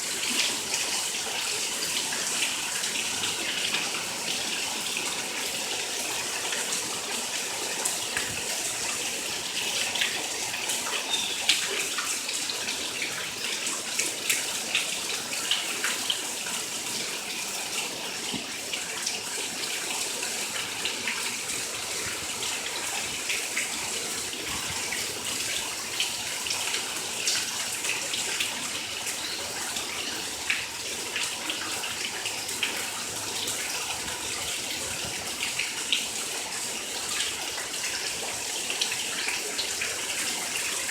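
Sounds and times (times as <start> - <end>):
rushing water: 0.0 - 40.9
small drips and splashes: 0.0 - 40.9.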